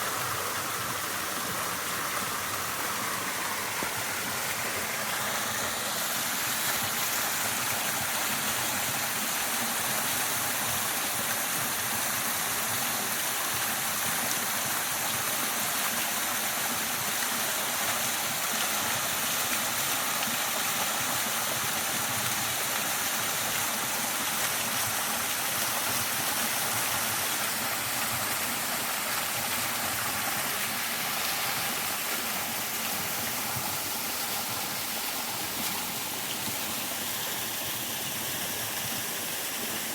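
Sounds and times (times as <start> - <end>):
waterfall roaring: 0.0 - 10.1.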